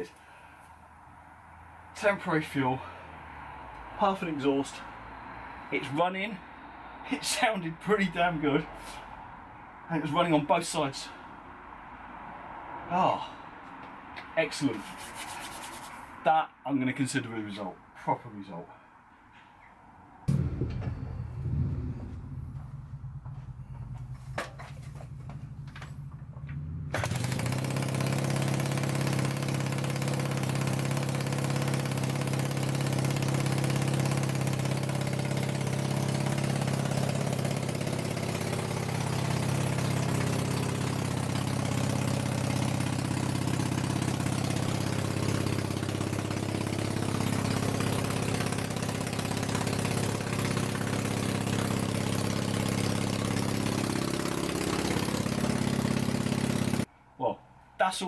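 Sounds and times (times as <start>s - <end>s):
motorcycle engine starting and idling: 20.3s - 56.9s.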